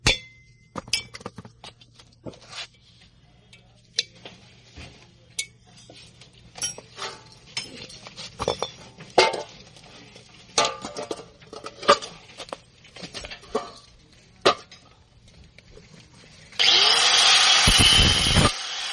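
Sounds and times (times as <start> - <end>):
metal clinking and knocking: 0.0 - 1.6, 5.4 - 9.8, 10.5 - 15.0.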